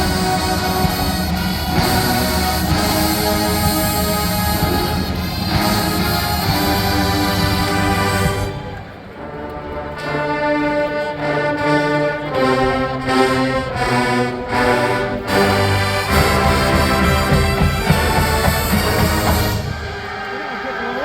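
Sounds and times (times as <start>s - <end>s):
marching band brass fanfare: 0.0s - 21.0s.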